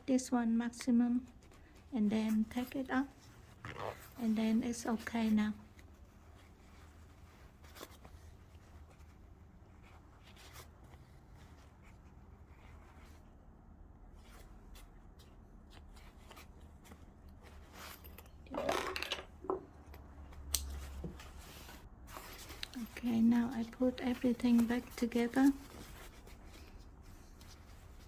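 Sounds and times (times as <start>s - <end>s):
fabric rustling: 0.4s - 28.0s
zipper clicks: 3.5s - 4.5s.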